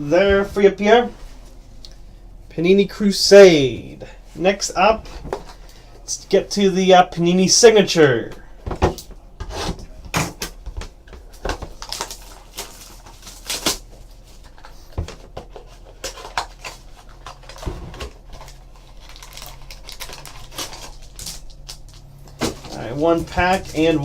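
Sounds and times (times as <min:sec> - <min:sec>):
cardboard and plastic wrapping crackling: 0:11.1 - 0:24.0.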